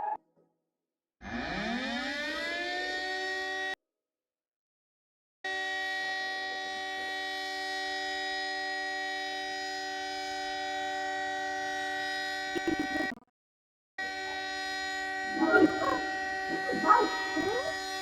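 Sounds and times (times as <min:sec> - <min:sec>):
electronic alarm chord: 0:14.0 - 0:18.0.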